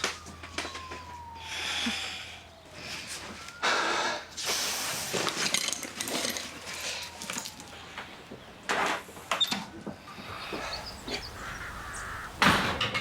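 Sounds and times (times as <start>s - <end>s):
faint police siren: 0.0s - 13.0s
breathy rustling hiss: 10.2s - 12.6s.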